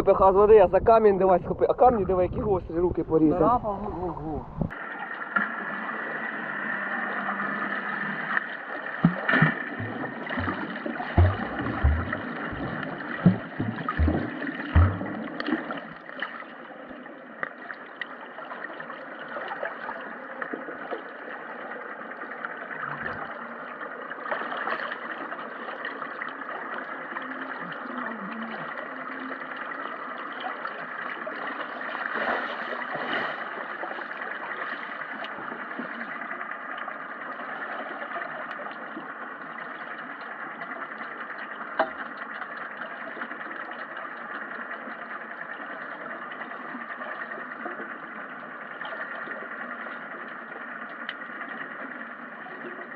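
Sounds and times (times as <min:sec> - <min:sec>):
muffled underwater water sloshing: 0:00.0 - 0:52.9
dull knocks: 0:09.0 - 0:15.5.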